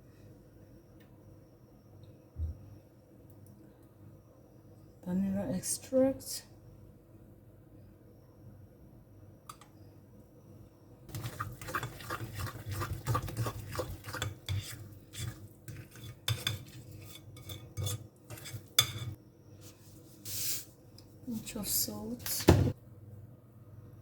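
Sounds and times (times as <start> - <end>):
utensil stirring in mixing bowl: 11.1 - 19.2.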